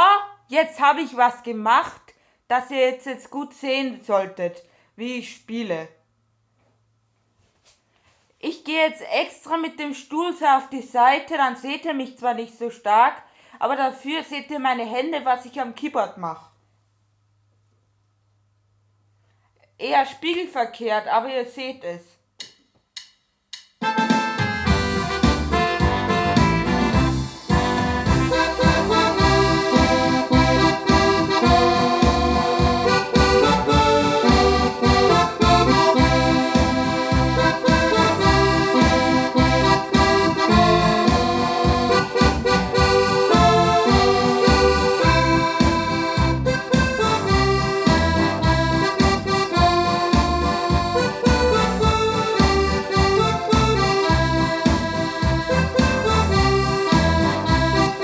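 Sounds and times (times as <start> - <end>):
bass and drum beat: 23.8 - 58.0
electronic keyboard melody: 23.8 - 58.0.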